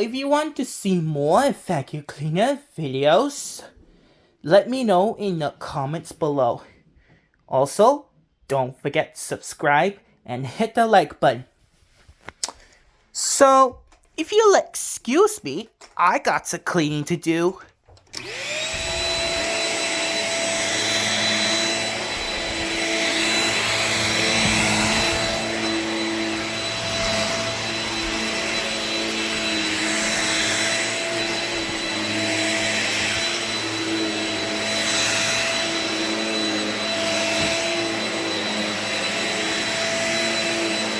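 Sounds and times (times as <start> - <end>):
vacuum cleaner motor whining: 17.9 - 40.9.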